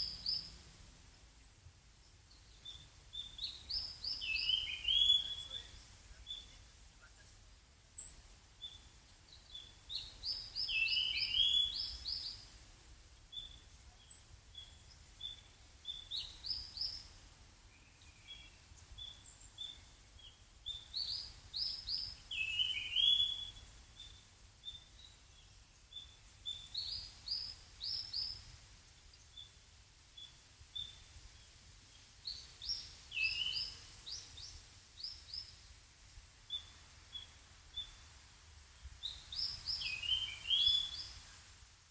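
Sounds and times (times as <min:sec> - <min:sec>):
songbird calling: 0:00.0 - 0:00.6, 0:01.4 - 0:07.3, 0:08.0 - 0:12.5, 0:13.3 - 0:29.6, 0:32.2 - 0:35.7, 0:38.9 - 0:41.4.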